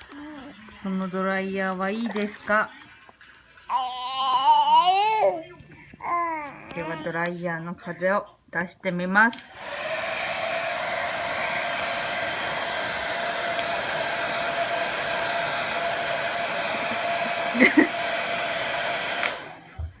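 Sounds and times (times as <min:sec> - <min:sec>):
hair dryer blowing: 0:09.4 - 0:20.0.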